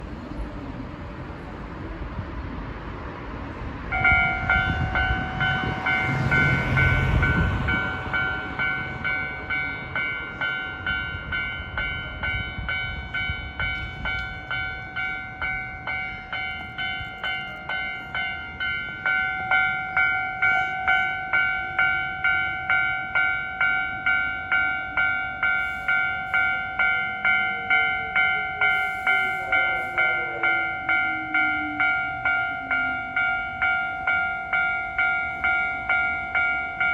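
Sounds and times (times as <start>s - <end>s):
passing vehicle rumble: 0.0s - 22.4s
level crossing warning bell: 3.9s - 36.9s.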